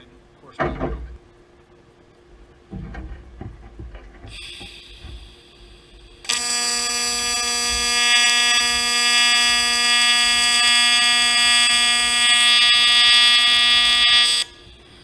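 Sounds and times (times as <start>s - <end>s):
welding arc buzzing: 4.3s - 15.0s.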